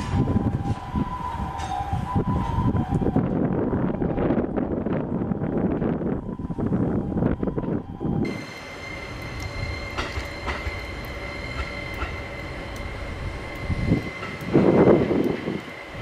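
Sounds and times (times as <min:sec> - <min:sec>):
electric train whine: 0:00.0 - 0:16.0
low rumbling gusts: 0:00.0 - 0:16.0
wheels clicking over rail joints: 0:08.3 - 0:16.0.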